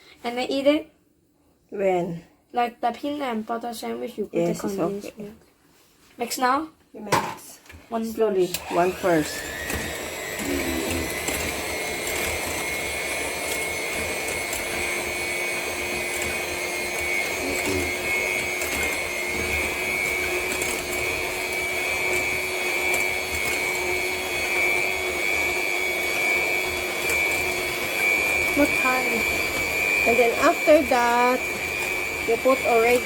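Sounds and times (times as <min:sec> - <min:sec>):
electric mixer running: 0:08.4 - 0:33.0.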